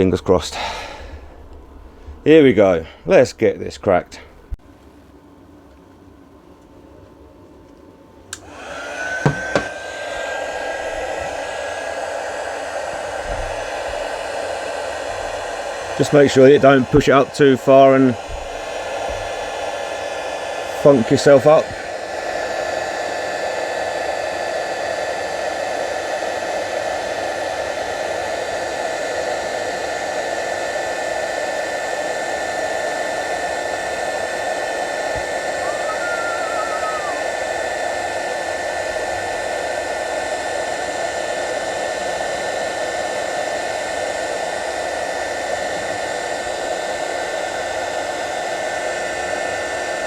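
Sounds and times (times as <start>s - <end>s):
heat gun blowing: 0.5s - 3.2s, 8.3s - 26.2s, 29.1s - 50.0s.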